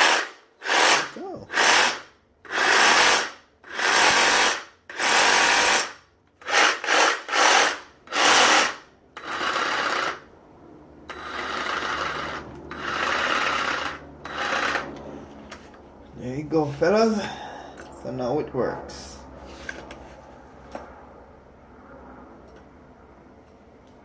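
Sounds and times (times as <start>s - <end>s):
reciprocating saw running: 0.0s - 10.3s, 11.1s - 15.0s.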